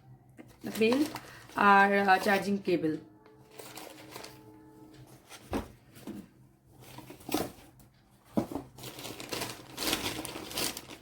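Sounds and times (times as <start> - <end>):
packaging rustling: 0.5 - 2.4, 3.5 - 4.4, 6.8 - 11.0.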